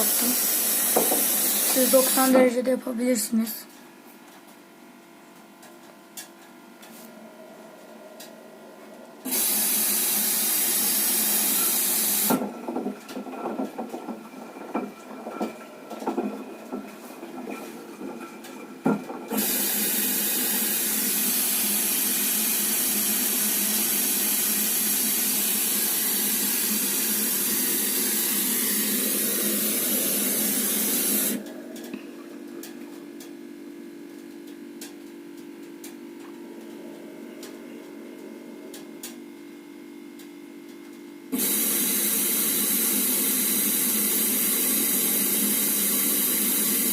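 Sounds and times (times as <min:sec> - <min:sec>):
water spraying into washing machine: 0:00.0 - 0:02.5, 0:09.3 - 0:15.6, 0:16.2 - 0:31.4, 0:41.4 - 0:46.9
low hum: 0:06.6 - 0:09.3, 0:29.0 - 0:40.9.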